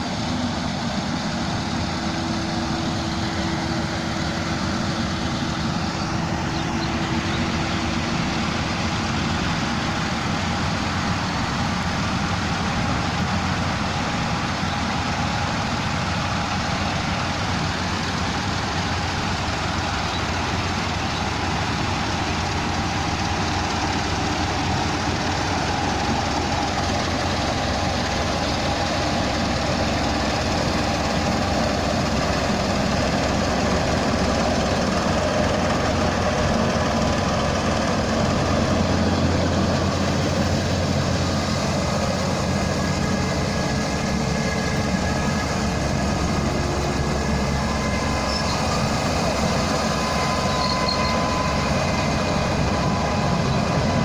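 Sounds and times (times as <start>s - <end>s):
combine harvester engine drone: 0.0s - 54.0s.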